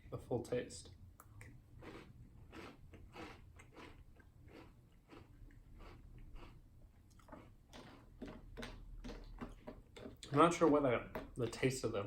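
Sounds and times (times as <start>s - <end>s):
person chewing crunchy cereal: 1.4s - 10.4s.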